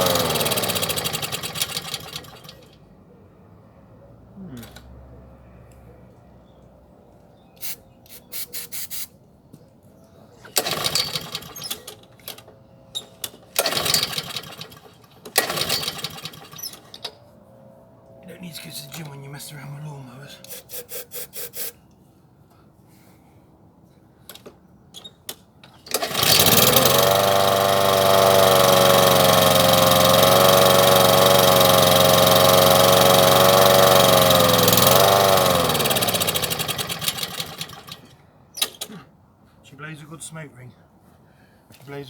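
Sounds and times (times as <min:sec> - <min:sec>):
mower engine pull-start rattling: 0:00.0 - 0:02.9, 0:10.4 - 0:17.2, 0:24.3 - 0:39.1.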